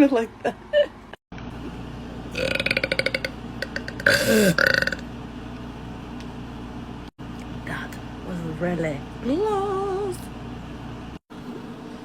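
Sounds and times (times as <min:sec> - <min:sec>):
woman burping: 0:02.4 - 0:05.0.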